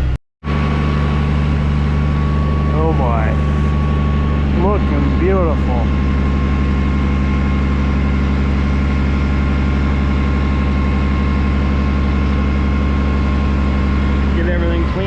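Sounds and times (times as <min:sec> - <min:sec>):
tractor engine droning: 0:00.0 - 0:15.0
faint steady whine: 0:00.8 - 0:06.2.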